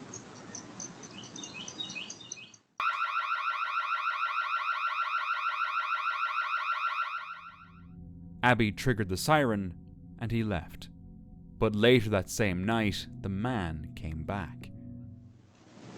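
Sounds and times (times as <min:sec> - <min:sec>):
bird chirps: 0:00.1 - 0:02.7
pulsing electronic alarm siren: 0:02.8 - 0:08.0.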